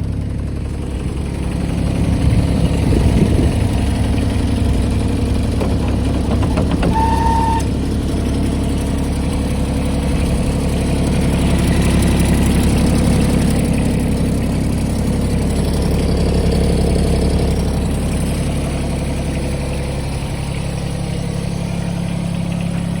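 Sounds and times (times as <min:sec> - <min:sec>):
lawnmower diesel engine running: 0:00.0 - 0:23.0
short high beep: 0:07.0 - 0:07.7.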